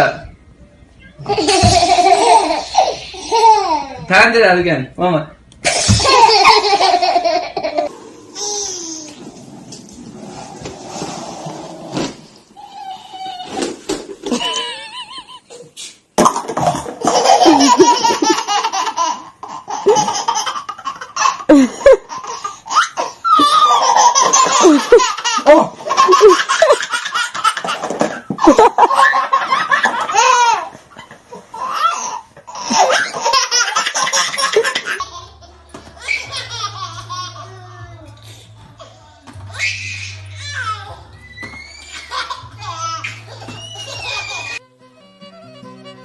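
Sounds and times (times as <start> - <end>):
person laughing hard: 14.3 - 15.6, 17.2 - 19.0, 21.5 - 22.2, 23.4 - 27.0, 28.3 - 30.2.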